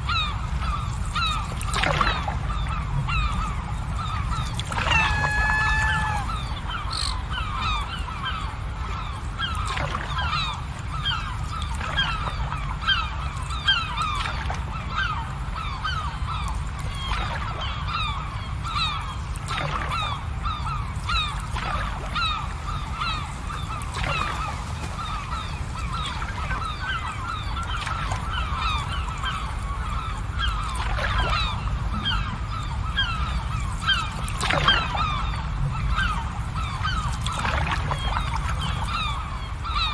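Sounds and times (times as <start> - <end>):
flock of birds honking: 2.1 - 9.1.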